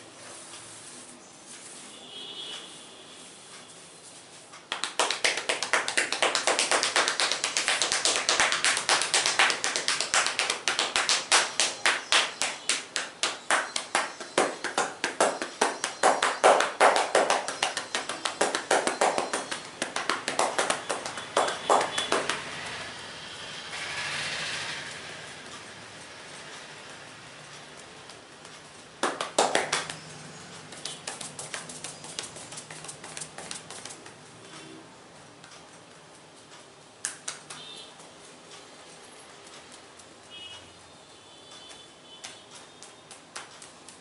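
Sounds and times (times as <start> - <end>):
hands tapping in massage: 4.7 - 22.5, 28.1 - 30.0, 30.6 - 34.2, 37.0 - 37.7, 41.6 - 44.0.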